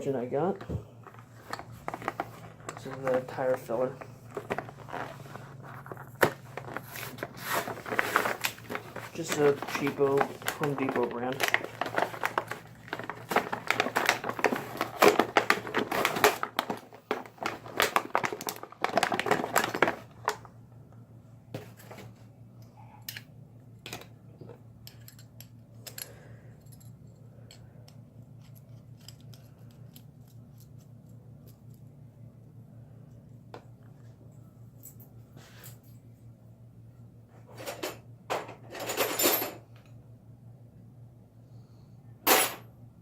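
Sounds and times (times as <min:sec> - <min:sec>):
low steady hum: 0:00.0 - 0:43.0
packaging crinkling: 0:01.7 - 0:20.5.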